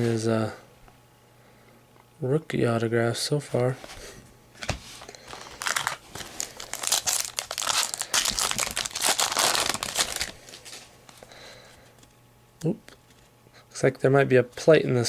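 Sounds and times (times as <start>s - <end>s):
plastic wrapper crinkling: 5.0s - 10.9s.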